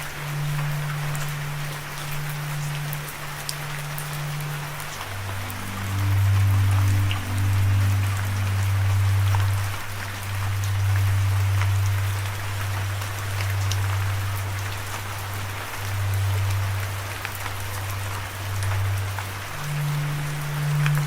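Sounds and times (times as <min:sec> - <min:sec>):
low sustained hum: 0:00.0 - 0:21.0
steady rain falling: 0:00.0 - 0:21.0.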